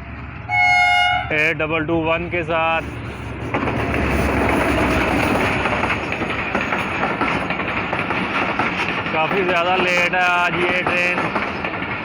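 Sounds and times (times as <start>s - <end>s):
train wheels rolling on rails: 1.4s - 12.0s
clicks over rail joints: 3.5s - 12.0s.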